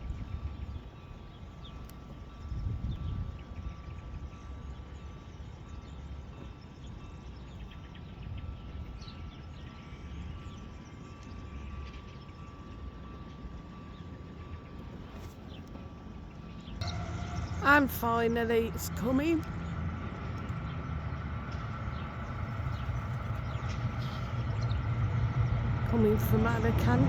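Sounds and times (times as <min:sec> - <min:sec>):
steady low rumble: 0:16.8 - 0:27.0.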